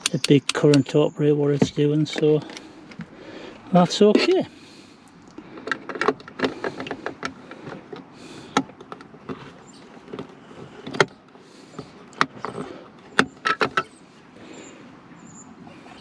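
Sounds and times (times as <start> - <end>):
sharp clicks and knocks: 5.3 - 13.9.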